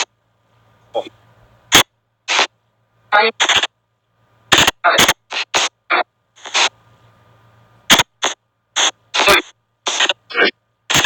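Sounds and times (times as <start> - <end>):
choppy bursts of hissy noise: 1.7 - 2.5, 6.4 - 7.1.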